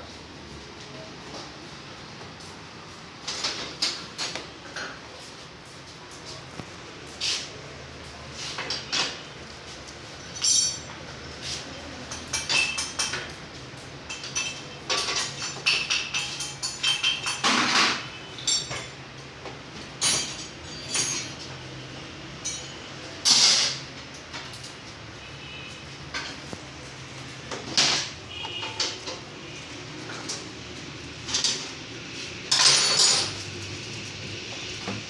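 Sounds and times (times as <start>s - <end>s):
metal tools clinking: 10.2s - 11.0s, 12.0s - 13.3s, 14.1s - 19.0s, 20.0s - 21.5s, 22.4s - 23.8s, 32.5s - 33.5s.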